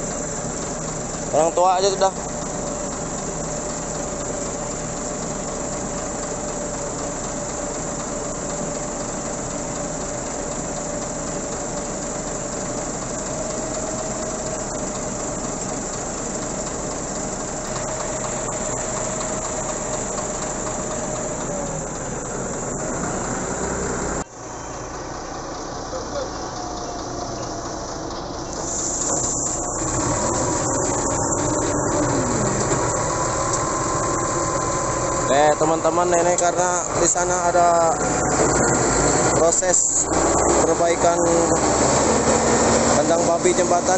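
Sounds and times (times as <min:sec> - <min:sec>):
heavy vehicle engine running: 0:00.0 - 0:43.9
held whine: 0:00.0 - 0:43.9
loud hiss: 0:28.5 - 0:42.6.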